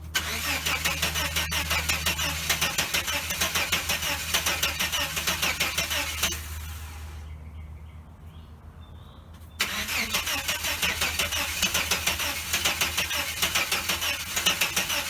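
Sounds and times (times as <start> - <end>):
starter cranking engine: 0.0 - 7.2, 9.6 - 15.0.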